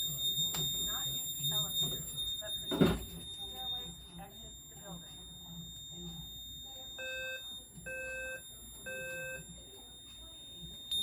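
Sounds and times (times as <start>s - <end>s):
steady high-pitched tone: 0.0s - 7.7s
fire alarm horn beeps: 0.0s - 9.5s.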